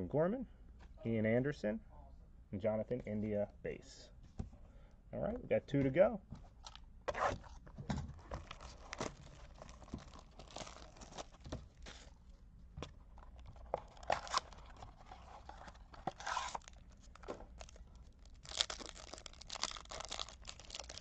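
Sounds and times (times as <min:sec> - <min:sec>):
wrapper crinkling: 0:08.2 - 0:12.2, 0:13.2 - 0:21.0
card pack tearing open: 0:08.3 - 0:12.1, 0:13.8 - 0:21.0.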